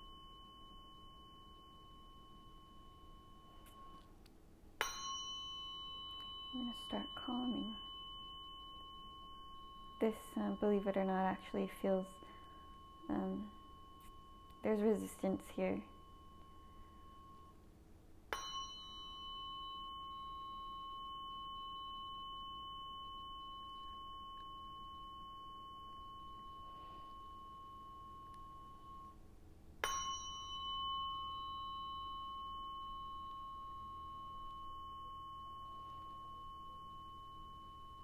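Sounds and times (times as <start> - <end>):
tuning fork ringing: 0.0 - 38.0.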